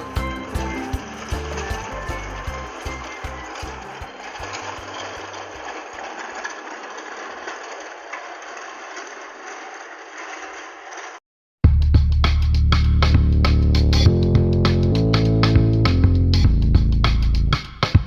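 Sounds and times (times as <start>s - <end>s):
toy train motor whirring: 0.0s - 11.2s.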